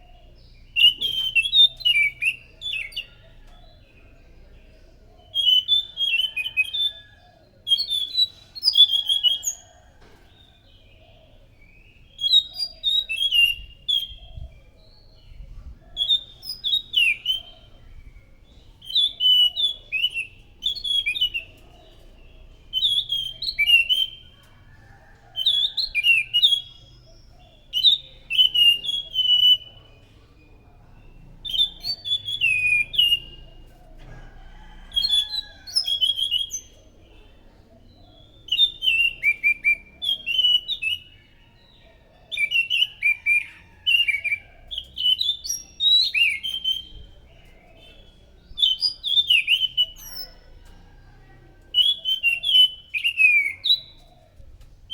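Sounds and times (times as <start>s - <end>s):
thrush singing whistled notes: 0.7s - 3.2s, 22.7s - 24.4s, 31.4s - 33.6s, 38.5s - 41.2s.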